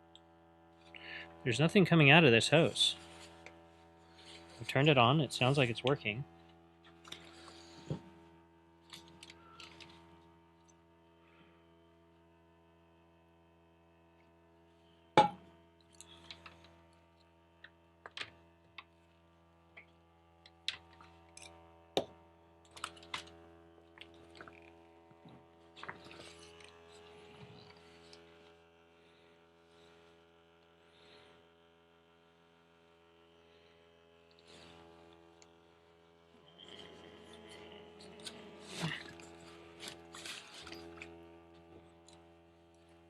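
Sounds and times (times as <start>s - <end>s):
pump running with steady hum: 0.0s - 43.0s.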